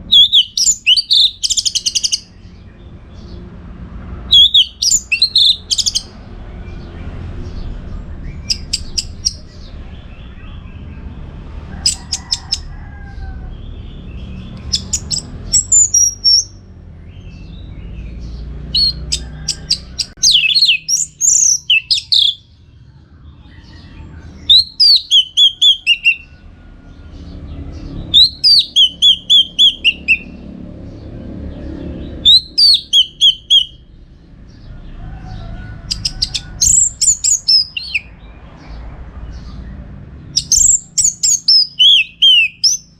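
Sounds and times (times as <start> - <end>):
thrush singing: 0.0 - 2.5, 4.2 - 6.3, 18.7 - 22.5, 23.6 - 30.5, 32.0 - 33.9, 40.4 - 42.9.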